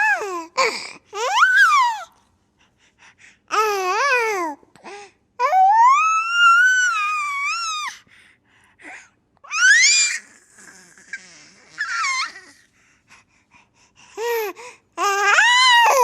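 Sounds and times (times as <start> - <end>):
baby squealing: 9.5 - 12.6.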